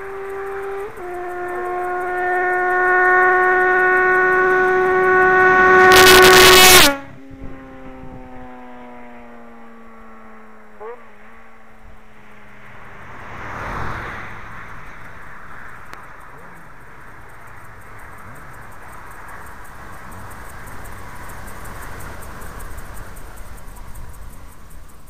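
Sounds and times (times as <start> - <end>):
motorcycle engine high-pitched howl: 0.0 - 12.9
rushing noise: 5.3 - 7.1.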